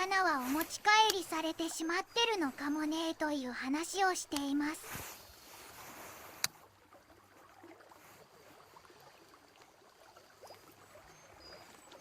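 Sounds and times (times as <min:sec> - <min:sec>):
stream water running: 0:00.0 - 0:12.0.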